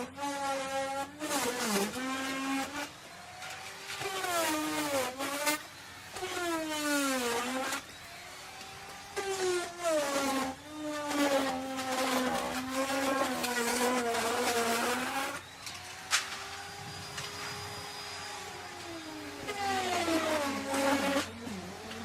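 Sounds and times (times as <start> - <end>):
router bit rasping wood: 0.0 - 22.0
wood router motor whine: 0.0 - 22.0.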